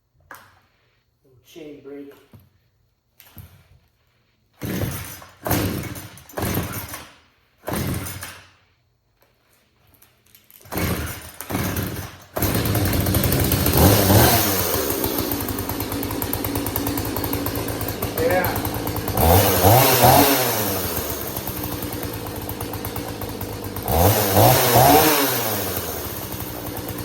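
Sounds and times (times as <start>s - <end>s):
chainsaw pull-start cranking: 4.6s - 8.6s, 9.9s - 27.0s
chainsaw engine running and revving: 10.7s - 27.0s.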